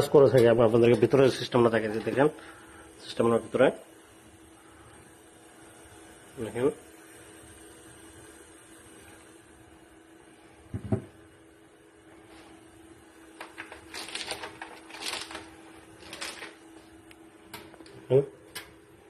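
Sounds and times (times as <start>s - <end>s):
packaging machine humming: 13.2s - 19.0s.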